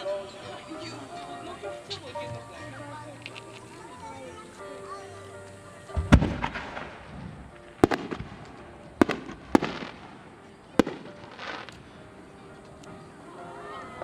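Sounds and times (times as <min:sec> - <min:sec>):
fireworks crackle and echo: 0:05.3 - 0:13.1
fireworks bangs: 0:05.9 - 0:12.0.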